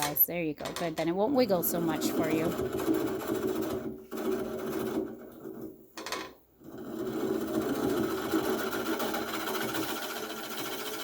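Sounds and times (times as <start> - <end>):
turning tool scraping wood: 1.4 - 5.8, 6.6 - 11.0
wood lathe drone: 1.8 - 5.2, 6.7 - 11.0.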